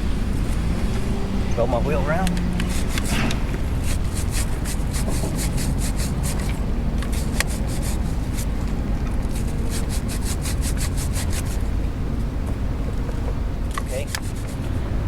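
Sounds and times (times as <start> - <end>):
steady low rumble: 0.0 - 15.0
brush scrubbing a chain: 2.5 - 11.7, 13.7 - 14.9.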